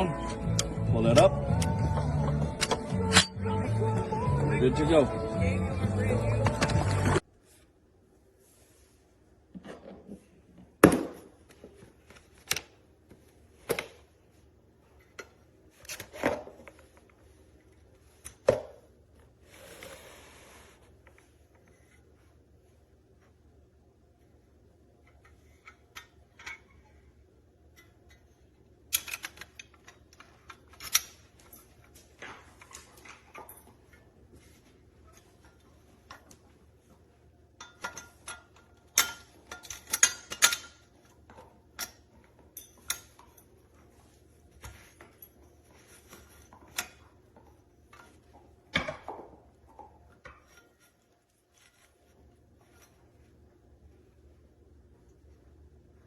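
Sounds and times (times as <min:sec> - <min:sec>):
metal clicks and clinks: 0:37.6 - 0:40.8.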